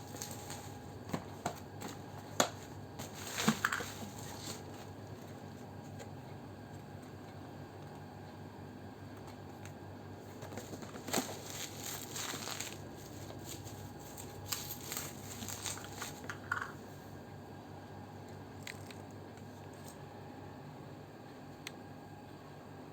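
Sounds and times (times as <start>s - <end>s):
packaging crinkling and rustling: 0.0s - 5.6s, 10.2s - 16.9s.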